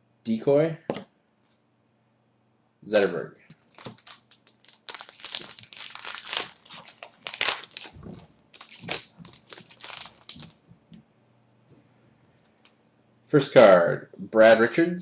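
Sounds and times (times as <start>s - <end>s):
card pack wrapper tearing and crinkling: 3.6s - 10.6s.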